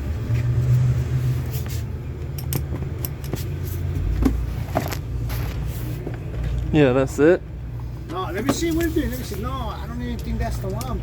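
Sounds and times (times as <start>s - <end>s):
hand tools clinking on bolts: 2.3s - 3.5s, 8.4s - 11.0s.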